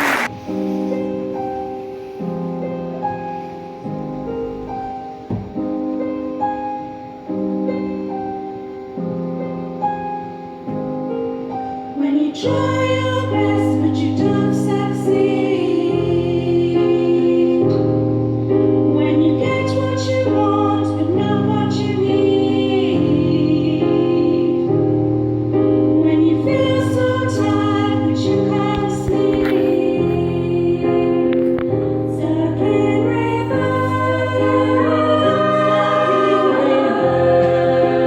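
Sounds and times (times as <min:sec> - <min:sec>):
piano accompaniment: 0:00.0 - 0:38.0
women's choir singing: 0:12.0 - 0:18.1, 0:19.0 - 0:24.9, 0:25.9 - 0:38.0.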